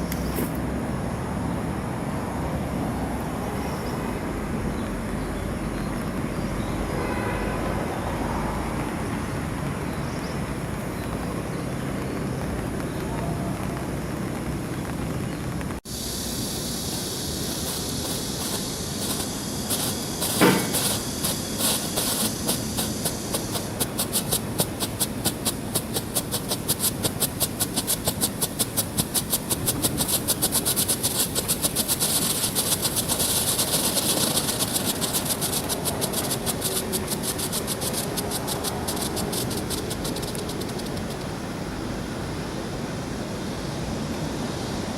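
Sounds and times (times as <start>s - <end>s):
rapid crackling pops: 11.0s - 41.4s
firework hissing: 15.6s - 42.4s
loud crack: 16.9s - 41.3s.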